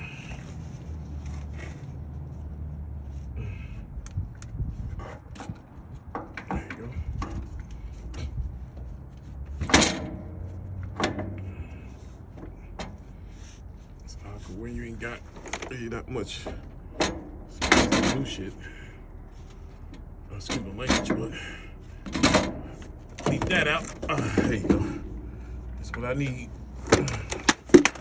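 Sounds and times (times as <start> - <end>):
low steady hum: 0.0 - 28.0
hand tools knocking and clanking: 5.0 - 13.5, 14.2 - 28.0.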